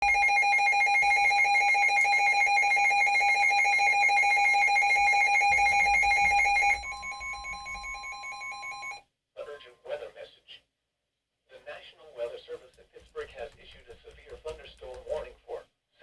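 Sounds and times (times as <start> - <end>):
electronic alarm tone trilling: 0.0 - 9.0
steady warning tone: 0.0 - 9.0.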